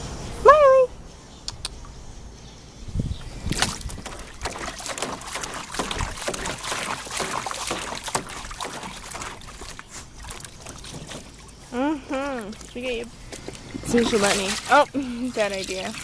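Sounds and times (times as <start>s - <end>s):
dog splashing in water: 3.5s - 16.0s.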